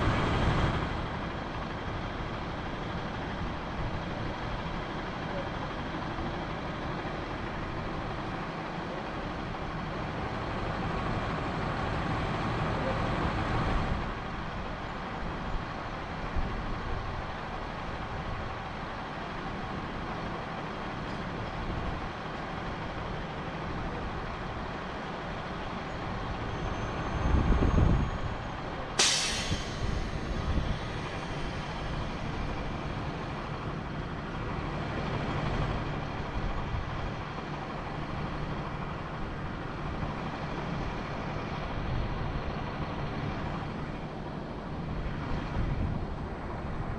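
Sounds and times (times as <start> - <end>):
truck engine running: 0.0 - 46.9
sharp hiss of air: 29.0 - 31.7.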